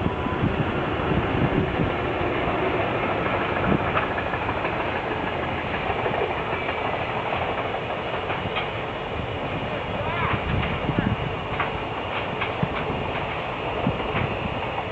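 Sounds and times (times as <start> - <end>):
train wheels rumbling on rail: 0.0 - 14.9
clacks over rail joints: 2.0 - 9.0, 10.2 - 14.9.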